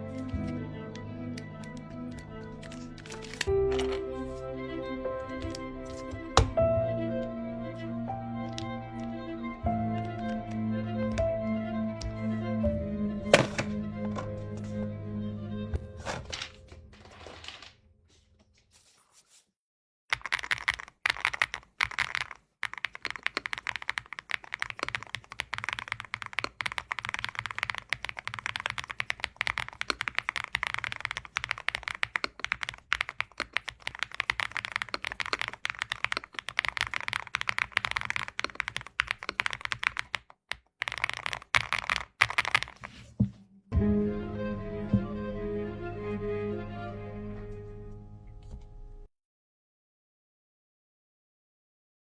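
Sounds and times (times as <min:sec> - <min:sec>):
mechanical keyboard typing: 0:01.6 - 0:04.0, 0:20.1 - 0:43.0.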